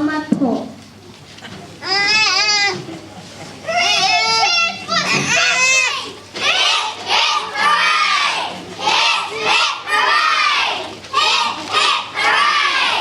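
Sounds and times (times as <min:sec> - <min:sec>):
children shouting: 0:03.6 - 0:13.0.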